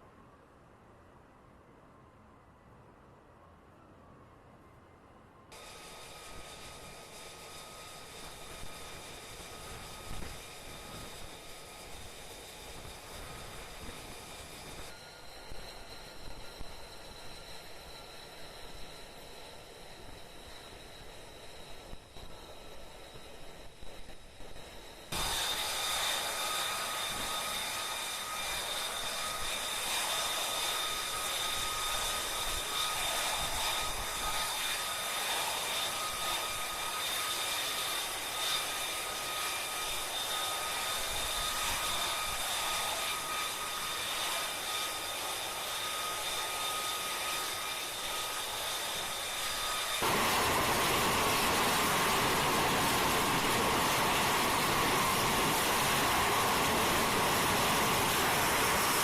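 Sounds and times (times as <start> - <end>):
jet engine whining: 5.6 - 59.0
rushing noise: 50.0 - 59.0.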